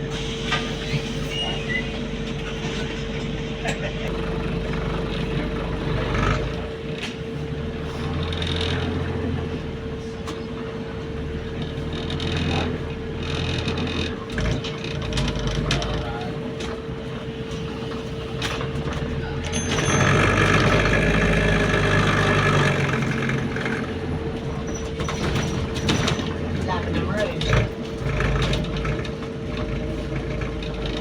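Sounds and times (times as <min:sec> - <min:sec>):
bus engine drone: 0:00.0 - 0:31.0
interior fittings rattling: 0:11.6 - 0:31.0.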